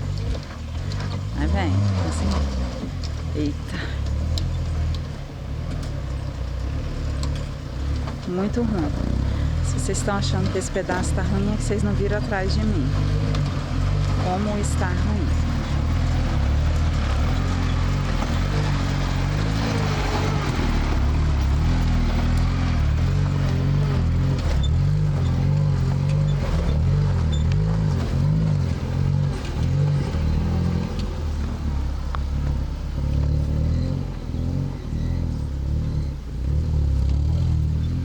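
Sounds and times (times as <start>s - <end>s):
car engine labouring: 0.0s - 38.0s.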